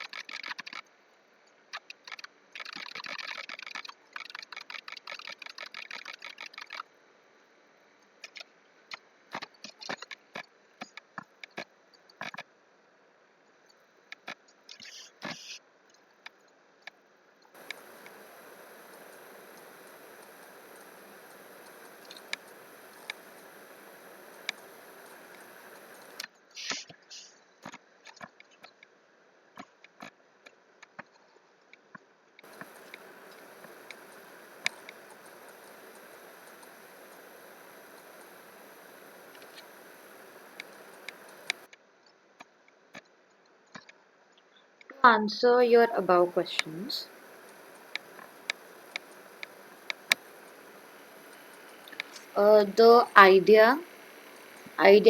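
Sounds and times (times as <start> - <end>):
computer mouse and keyboard clicks: 1.8 - 6.8
steady hiss: 17.6 - 27.8, 32.4 - 41.7, 45.0 - 55.0.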